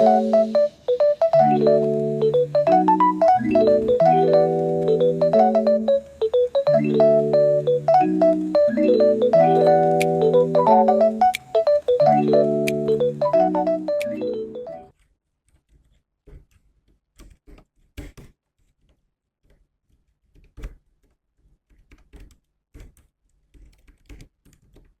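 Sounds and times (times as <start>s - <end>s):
electric piano music: 0.0s - 14.9s
keyboard key clicks: 1.5s - 14.6s.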